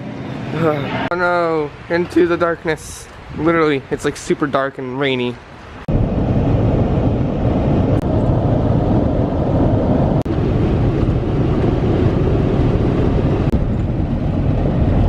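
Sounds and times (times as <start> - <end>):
wind noise: 0.0 - 4.6, 5.4 - 15.0
heavy rain: 5.4 - 15.0.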